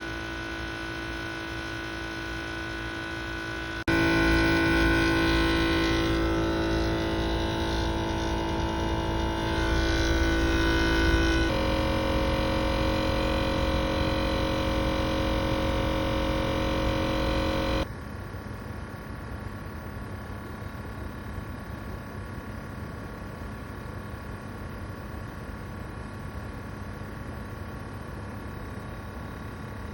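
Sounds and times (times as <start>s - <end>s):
compressor electrical hum: 0.0s - 18.2s.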